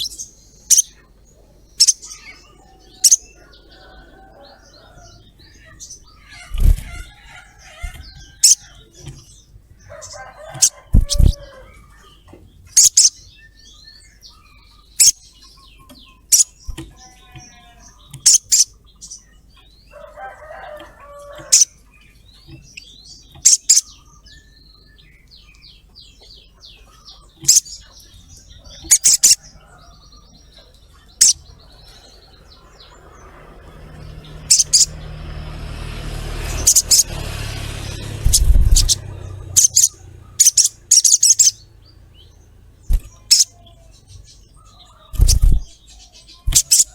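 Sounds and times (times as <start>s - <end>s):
soft bird twittering: 0.0s - 46.9s
low rumbling: 29.4s - 45.8s
sunbird sharp high calls: 34.3s - 35.2s, 36.2s - 41.7s, 42.9s - 43.9s, 46.4s - 46.9s.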